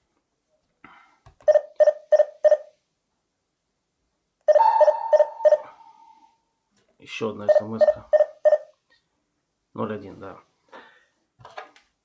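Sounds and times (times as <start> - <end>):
short electronic beeps: 4.5 - 6.3
steady high tone: 4.5 - 6.5.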